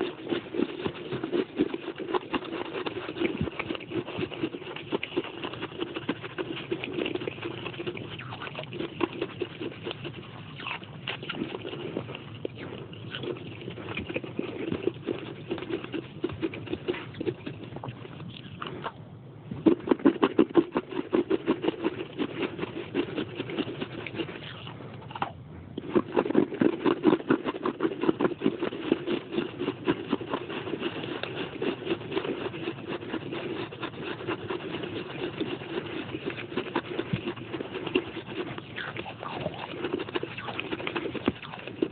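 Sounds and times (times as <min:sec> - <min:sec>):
chewing crunches: 0:00.0 - 0:41.9.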